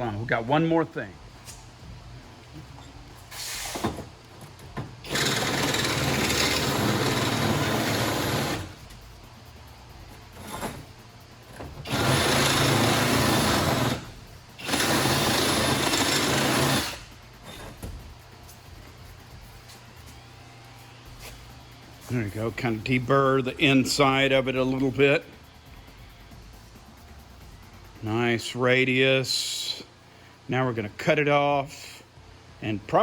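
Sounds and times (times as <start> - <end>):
power tool grinding metal: 5.0 - 8.8, 11.8 - 17.1.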